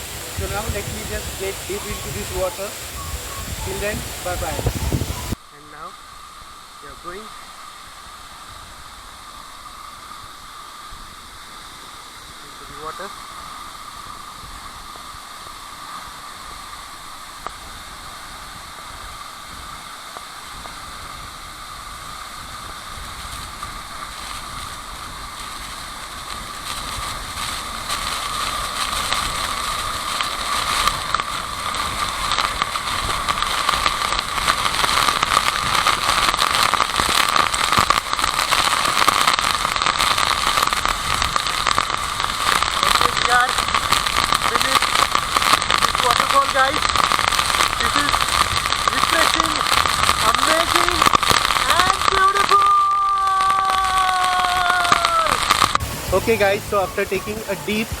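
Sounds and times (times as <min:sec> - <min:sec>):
waterfall rushing and splashing: 0:00.0 - 0:58.0.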